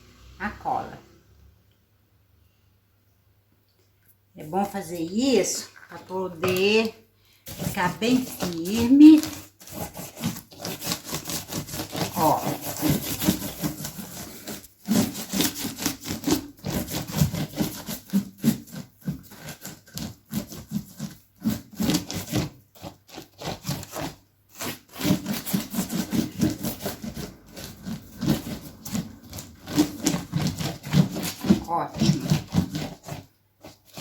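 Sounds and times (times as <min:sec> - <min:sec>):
hand rubbing cardboard: 0:07.5 - 0:34.0.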